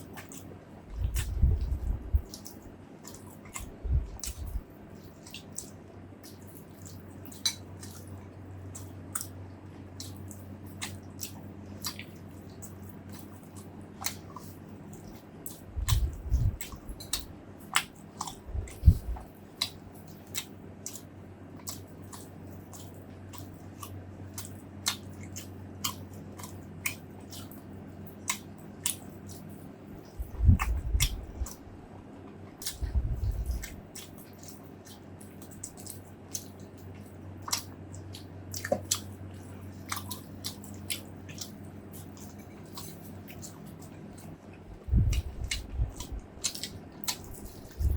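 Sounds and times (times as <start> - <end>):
biting and chewing: 0.0 - 47.9
dull low thumps: 0.9 - 2.2, 3.8 - 4.6, 15.7 - 16.6, 18.4 - 19.2, 30.2 - 31.5, 32.8 - 33.7, 44.7 - 46.3.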